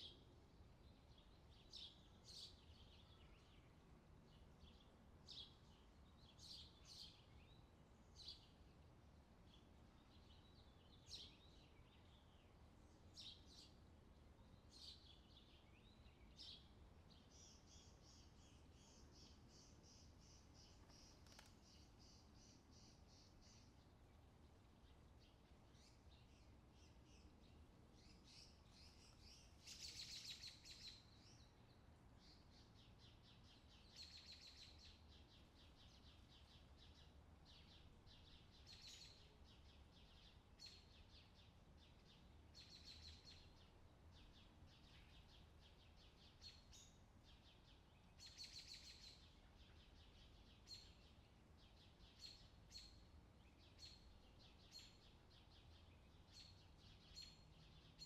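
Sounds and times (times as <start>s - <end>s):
birds chirping and trilling: 14.4s - 24.2s, 24.8s - 58.0s.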